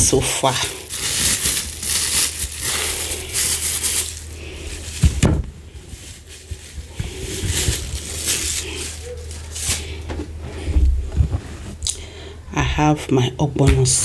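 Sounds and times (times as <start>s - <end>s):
rustling handling noise: 0.0s - 11.9s
steady low hum: 0.0s - 14.0s
low thump: 5.0s - 5.6s.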